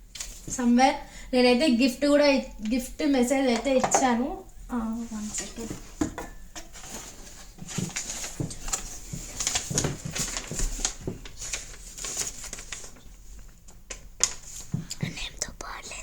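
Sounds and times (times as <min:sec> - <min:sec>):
cardboard packaging handling: 0:05.1 - 0:13.2.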